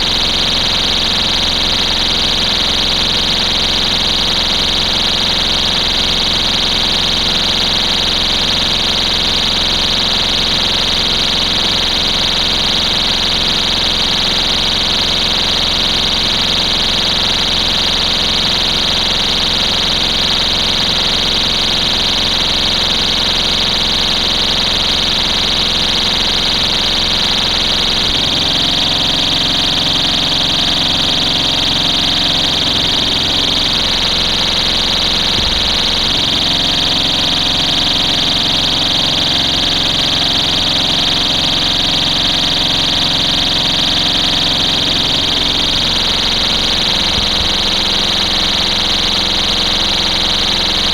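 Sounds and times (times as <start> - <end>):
alarm horn steady high tone: 26.6 - 48.0.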